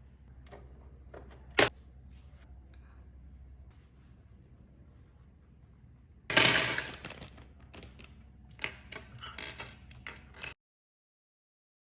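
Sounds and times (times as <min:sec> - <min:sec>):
hard objects clattering: 0:06.3 - 0:08.2.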